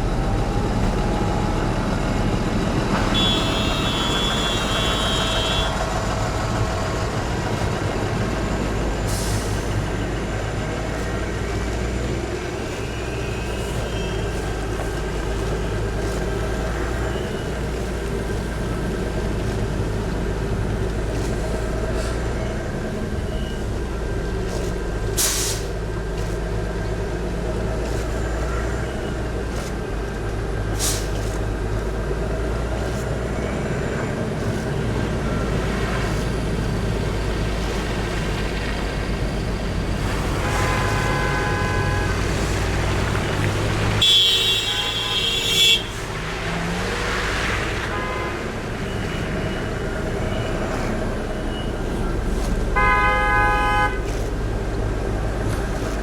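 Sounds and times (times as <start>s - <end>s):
road traffic drone: 0.0s - 56.0s
car horns honking: 2.7s - 8.0s, 10.9s - 24.7s, 27.7s - 29.8s, 40.0s - 46.2s, 47.7s - 54.4s.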